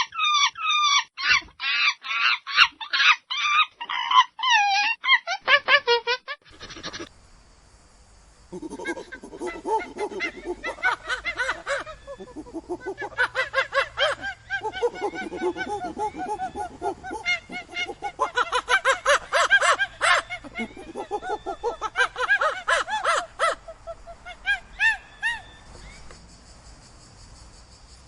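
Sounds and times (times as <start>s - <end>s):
monkeys chattering: 6.5s - 7.1s, 8.5s - 25.5s.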